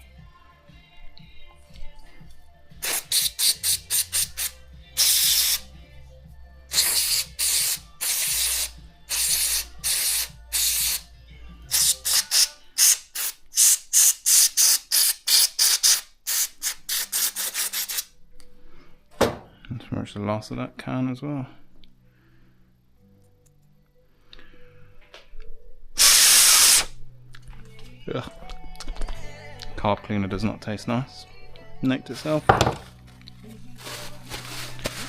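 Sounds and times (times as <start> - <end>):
aerosol spray hissing: 2.8 - 5.7, 6.7 - 11.1, 11.7 - 18.1, 26.0 - 26.9.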